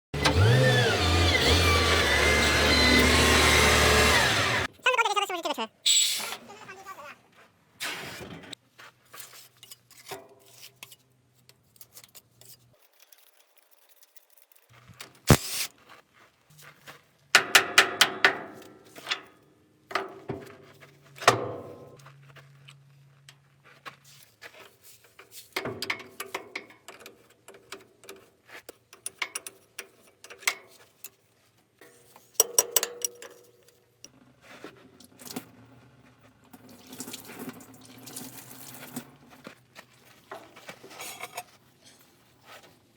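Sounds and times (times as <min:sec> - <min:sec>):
metal tools clinking and knocking: 0:31.9 - 0:33.8.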